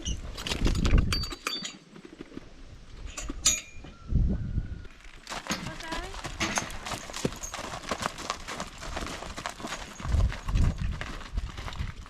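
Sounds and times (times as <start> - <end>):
horse hooves clip-clopping: 5.0 - 12.0.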